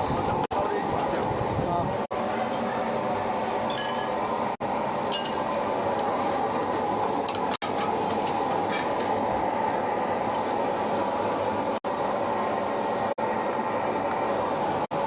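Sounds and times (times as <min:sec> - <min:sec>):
rushing kitchen noise: 0:00.0 - 0:15.0
dishes and utensils clinking: 0:03.7 - 0:04.2, 0:05.1 - 0:05.5.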